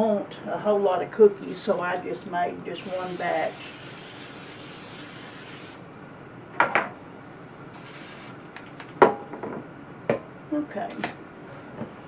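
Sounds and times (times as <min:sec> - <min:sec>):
steady hiss: 0:02.7 - 0:05.9, 0:07.8 - 0:08.7.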